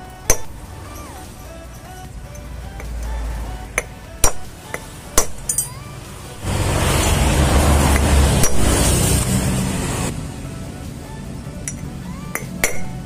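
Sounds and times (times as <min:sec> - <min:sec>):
steady rushing noise with hum: 0:00.0 - 0:13.0
metal parts clinking: 0:03.8 - 0:05.9.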